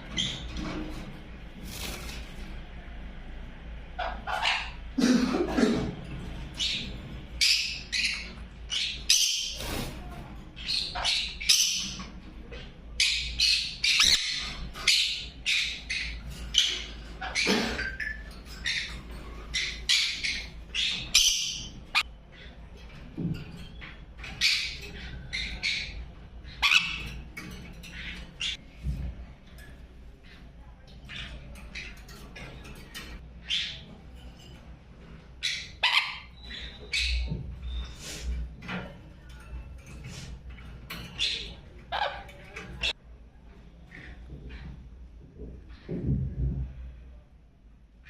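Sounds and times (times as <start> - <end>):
parrot squawking: 4.0 - 4.9, 24.3 - 27.3, 35.4 - 37.8, 41.2 - 43.0.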